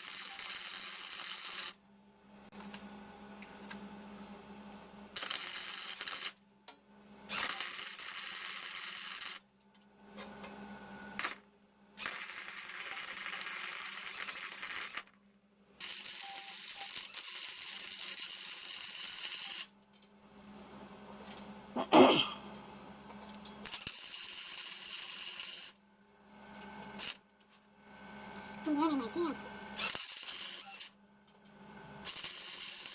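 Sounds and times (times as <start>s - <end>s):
welding arc crackling and hissing: 0.0s - 1.8s, 7.4s - 9.4s, 12.0s - 15.1s, 15.8s - 19.7s, 23.6s - 25.8s, 28.7s - 30.9s, 32.1s - 32.9s.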